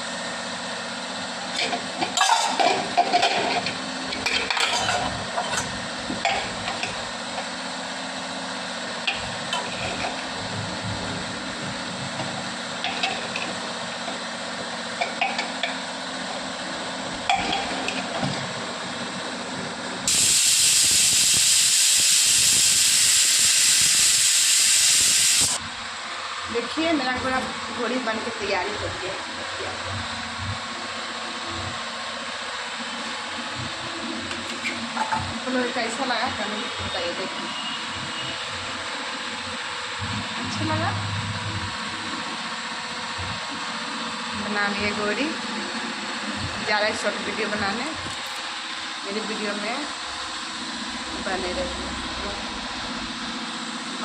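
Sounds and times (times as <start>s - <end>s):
loud even hiss: 20.1s - 25.6s
low hum: 50.9s - 53.5s.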